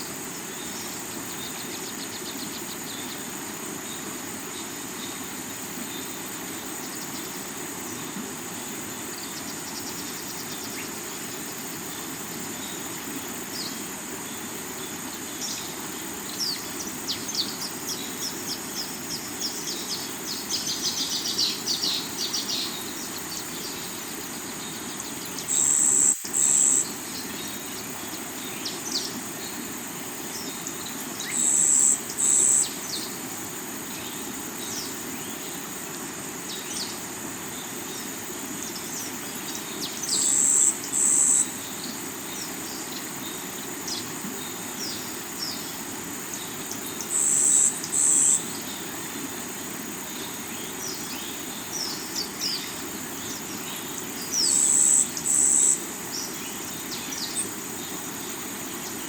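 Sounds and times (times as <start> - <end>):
insect buzzing chirps: 0.0 - 59.0.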